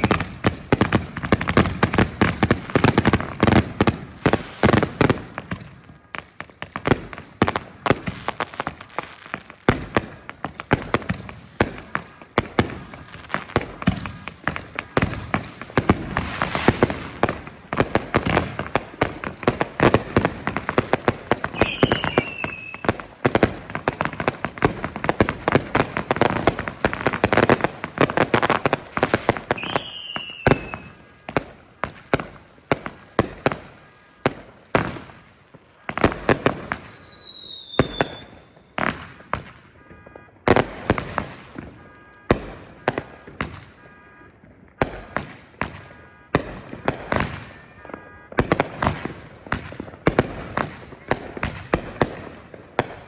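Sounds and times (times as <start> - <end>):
falling firework whistle: 0.0 - 0.4, 11.5 - 19.0, 21.4 - 23.1, 28.3 - 48.4
firecrackers crackling and popping: 0.0 - 53.0
firework bangs: 0.0 - 53.0.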